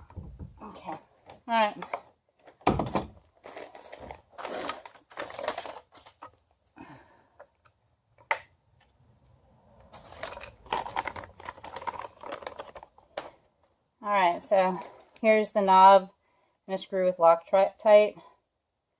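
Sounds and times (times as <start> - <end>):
hands handling small parts: 7.4 - 13.7.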